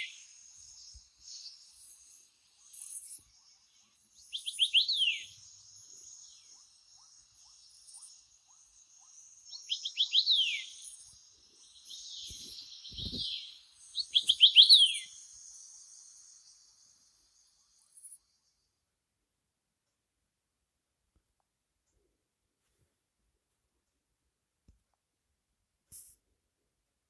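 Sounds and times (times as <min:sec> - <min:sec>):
faint high hiss: 0:00.0 - 0:18.8, 0:25.8 - 0:26.3.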